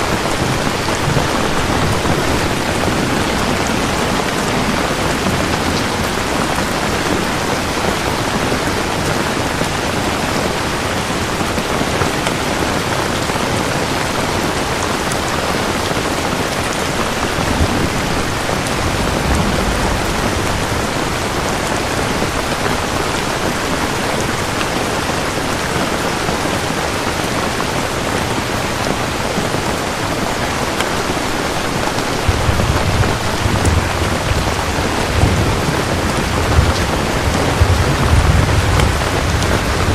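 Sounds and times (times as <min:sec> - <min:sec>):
faint thunder rumbling: 0:00.0 - 0:09.7, 0:15.8 - 0:24.9, 0:31.8 - 0:39.9
dense rain falling: 0:00.0 - 0:39.9.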